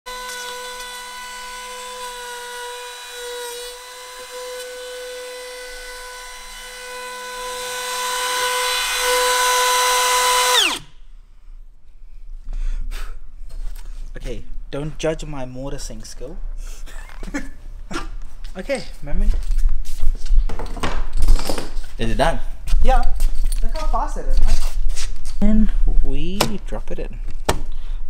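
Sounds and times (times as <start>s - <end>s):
wood router whining: 0.1s - 10.9s.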